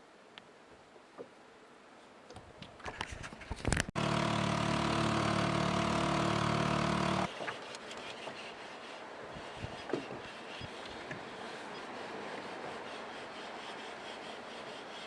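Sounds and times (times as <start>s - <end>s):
outboard motor running: 4.0s - 7.3s.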